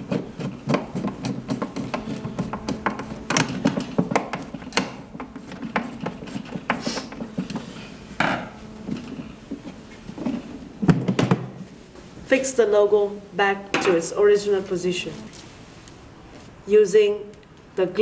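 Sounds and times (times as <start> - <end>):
tools clicking and knocking: 0.0 - 7.6
steady low hum: 0.0 - 18.0.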